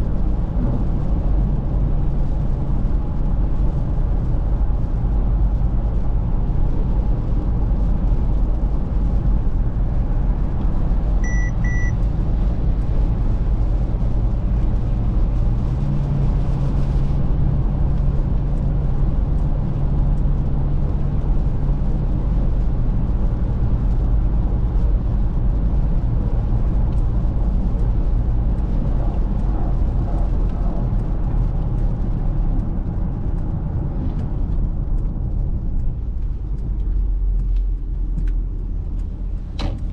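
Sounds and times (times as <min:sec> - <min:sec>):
low hum: 0:00.0 - 0:39.9
road and tyre noise: 0:00.0 - 0:39.9
short high beeps: 0:11.2 - 0:11.9.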